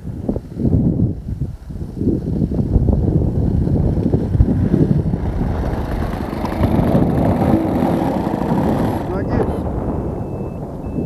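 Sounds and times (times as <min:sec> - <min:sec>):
wind buffeting microphone: 0:00.0 - 0:11.0
model plane engine running: 0:03.1 - 0:09.6.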